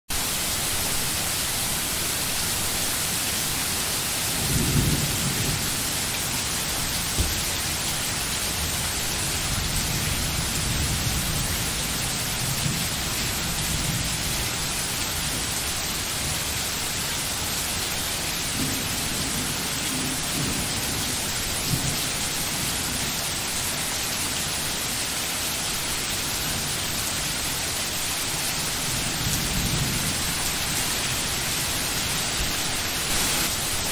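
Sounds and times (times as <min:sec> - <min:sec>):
heavy rain hissing: 0:00.1 - 0:33.9
thunder rumbling: 0:04.3 - 0:07.8.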